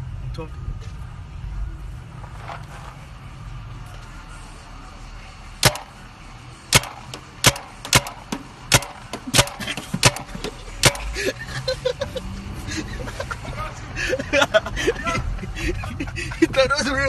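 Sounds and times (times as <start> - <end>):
paintball gun firing: 5.6 - 6.0, 6.7 - 11.1.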